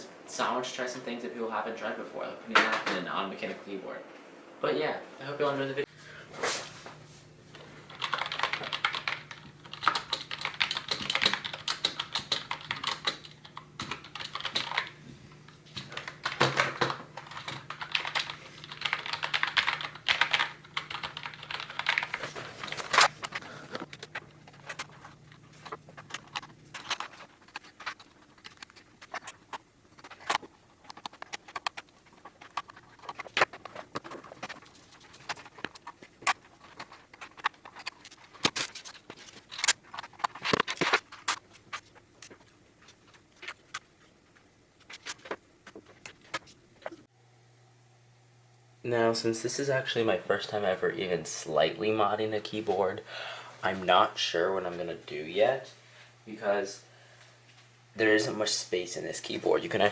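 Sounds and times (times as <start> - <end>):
keyboard typing: 7.9 - 15.0, 15.7 - 43.8.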